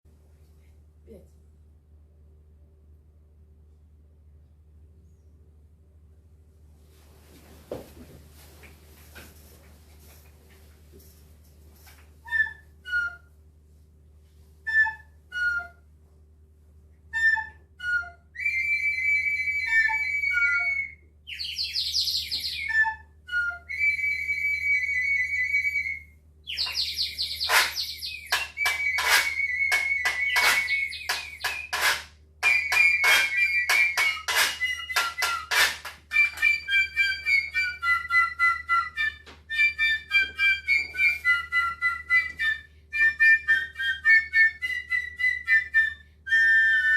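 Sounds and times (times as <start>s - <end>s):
shrill held whistle notes: 12.2s - 13.3s, 14.7s - 15.8s, 17.1s - 46.9s
two-note bird-call whistle: 12.2s - 13.3s, 14.7s - 15.9s, 17.1s - 46.9s
warbling whistle trills: 14.7s - 15.8s, 17.1s - 46.9s.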